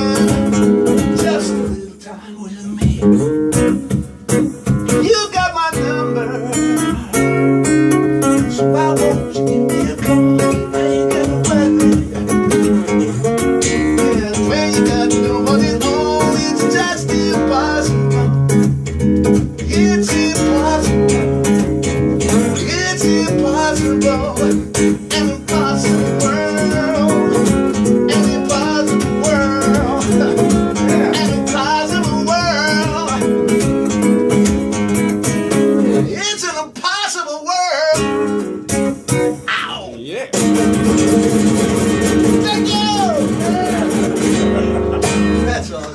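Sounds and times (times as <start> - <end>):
person singing: 0.0 - 3.3, 5.0 - 7.4, 8.3 - 12.4, 13.7 - 18.4, 19.6 - 21.2, 22.5 - 33.4, 42.2 - 45.9
guitar strumming: 0.0 - 45.9.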